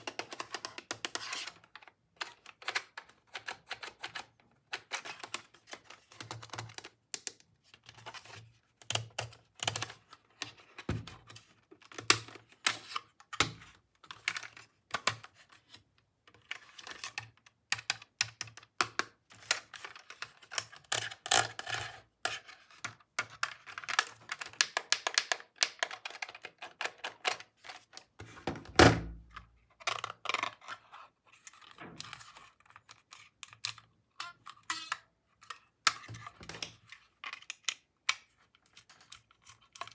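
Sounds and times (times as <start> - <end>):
plastic toy pieces clicking and rattling: 0.0 - 1.6, 23.2 - 28.0.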